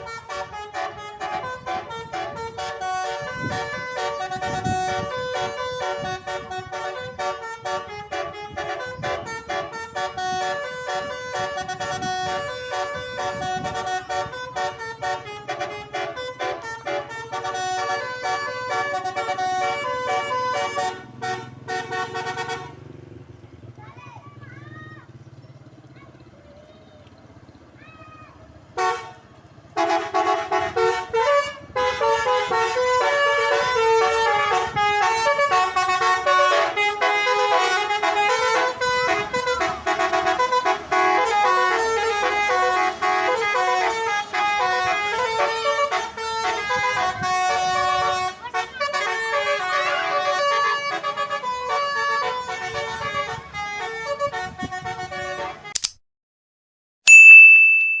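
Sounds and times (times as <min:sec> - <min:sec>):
multi-note air horn tune: 0:00.0 - 0:22.7, 0:29.8 - 0:55.8
loud high steady beep: 0:57.1 - 0:58.0.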